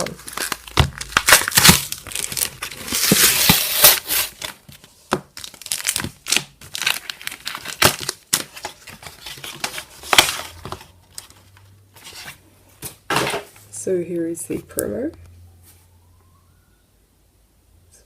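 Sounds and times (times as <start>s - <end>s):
plastic blister pack tearing: 0.0s - 10.7s
plastic crackling and snapping: 0.0s - 11.7s.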